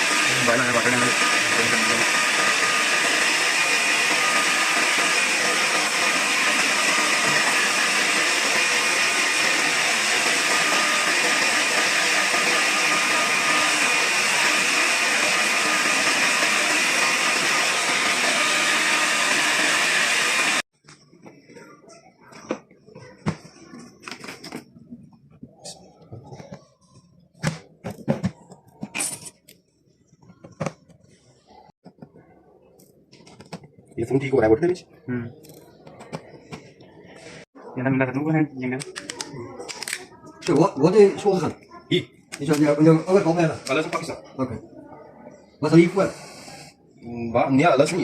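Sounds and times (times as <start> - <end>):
electric blower running: 0.0 - 20.7.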